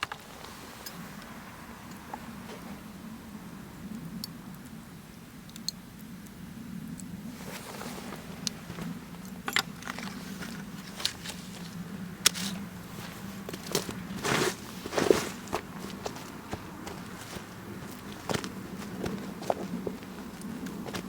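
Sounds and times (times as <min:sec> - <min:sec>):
wood fire crackling: 0:05.2 - 0:21.0.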